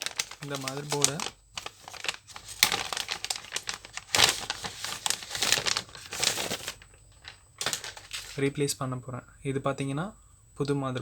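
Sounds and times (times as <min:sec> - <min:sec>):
plastic packaging crinkling: 0:00.0 - 0:08.6.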